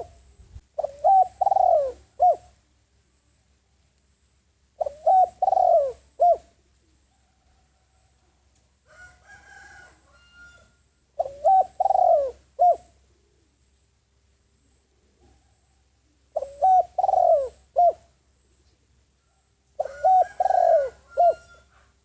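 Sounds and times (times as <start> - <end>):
dove cooing: 0.0 - 2.6, 4.8 - 7.7, 11.2 - 13.5, 15.0 - 18.2, 19.8 - 22.0.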